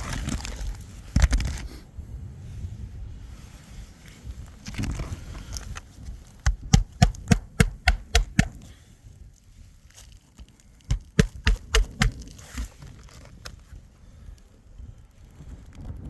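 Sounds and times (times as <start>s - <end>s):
hammer driving nails: 6.5s - 8.6s, 10.9s - 12.7s.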